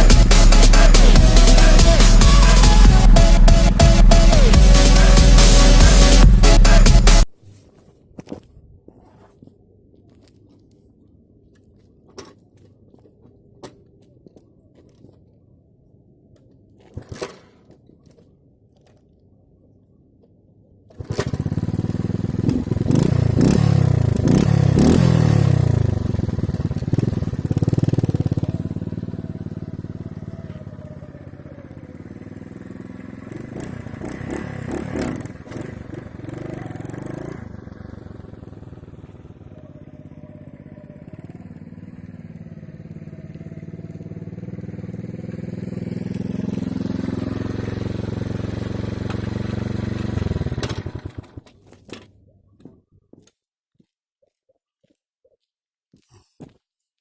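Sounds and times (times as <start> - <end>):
moped engine revving: 0.0 - 7.3, 21.0 - 51.5.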